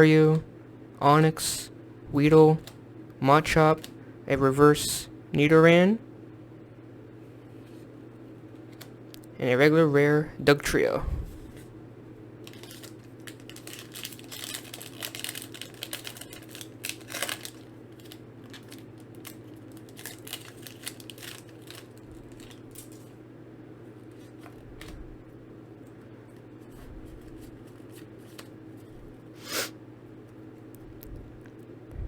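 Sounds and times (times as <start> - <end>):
steady low hum: 0.0 - 32.0
foil pack crinkling and tearing: 12.4 - 23.2
cards being shuffled: 24.0 - 25.1, 26.3 - 29.6.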